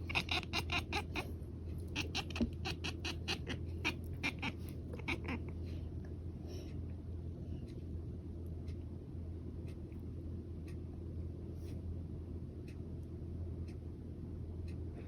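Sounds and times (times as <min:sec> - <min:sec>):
cat chattering: 0:00.0 - 0:05.8.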